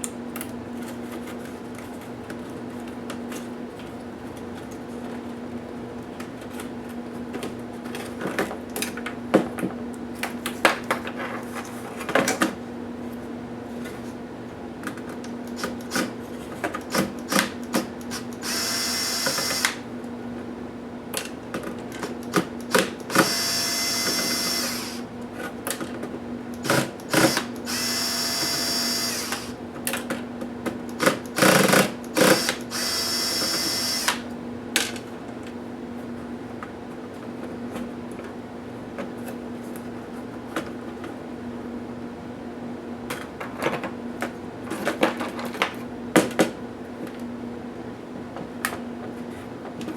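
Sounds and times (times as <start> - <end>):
electric screwdriver whining: 18.0 - 19.8, 22.7 - 25.1, 26.6 - 29.6, 31.0 - 34.2.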